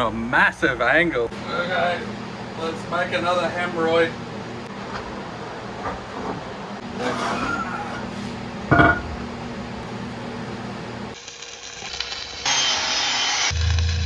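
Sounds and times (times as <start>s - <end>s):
steady hum: 0.0s - 11.5s, 13.5s - 14.0s
workshop handling noises: 5.8s - 9.2s
power tool running: 11.2s - 14.0s.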